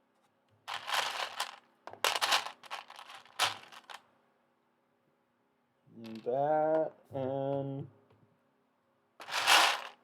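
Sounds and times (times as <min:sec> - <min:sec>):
plastic pieces clattering: 0:00.7 - 0:04.0, 0:09.2 - 0:10.0.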